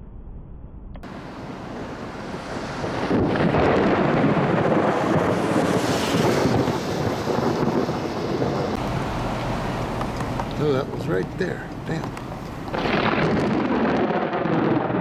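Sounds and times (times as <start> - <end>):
thunder crack and rumble: 0.0 - 15.0
wind on microphone: 1.0 - 15.0.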